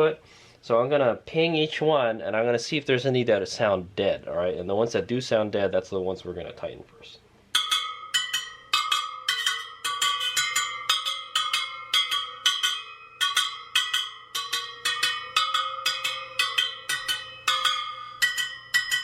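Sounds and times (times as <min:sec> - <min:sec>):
wheel spokes plucked pinging: 0:07.5 - 0:19.0.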